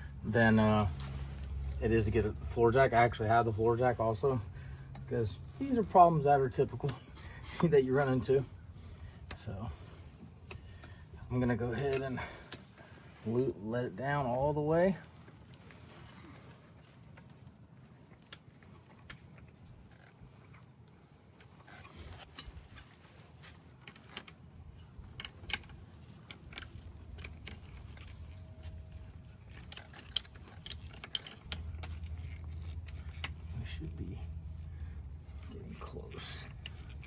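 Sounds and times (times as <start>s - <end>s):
metallic clicks and ticks: 23.8s - 33.6s.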